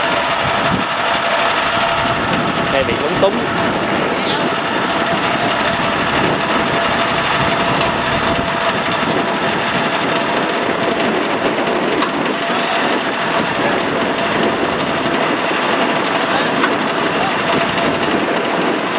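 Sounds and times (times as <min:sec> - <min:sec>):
diesel engine running: 0:00.0 - 0:18.9.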